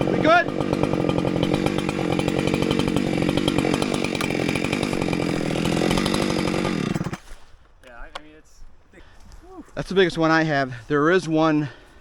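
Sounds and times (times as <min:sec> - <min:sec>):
chainsaw running at high speed: 0:00.0 - 0:07.2.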